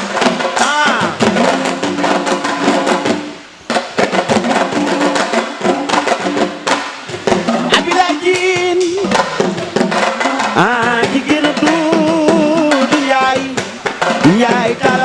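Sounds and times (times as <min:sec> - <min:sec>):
hand drums playing fast rhythm: 0:00.0 - 0:15.0.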